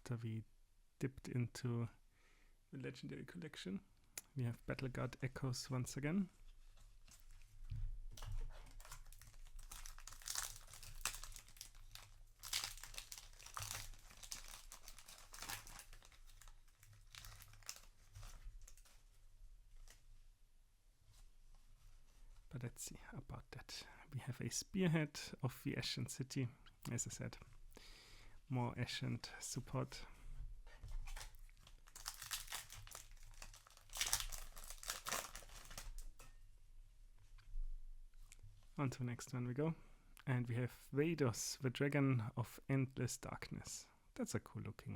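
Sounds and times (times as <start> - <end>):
foil wrapper crinkling: 8.2 - 19.0, 31.0 - 36.3
trading cards rustling: 31.0 - 35.9.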